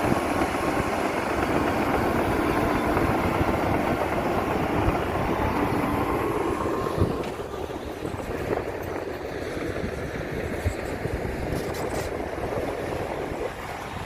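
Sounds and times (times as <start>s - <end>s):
diesel machinery engine rumble: 0.0s - 14.0s.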